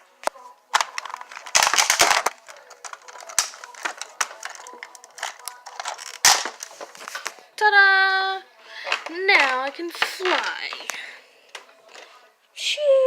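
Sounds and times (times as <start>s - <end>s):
sharp plastic snaps: 0.2s - 7.4s
plastic toy parts clattering: 0.7s - 7.4s, 8.8s - 12.1s.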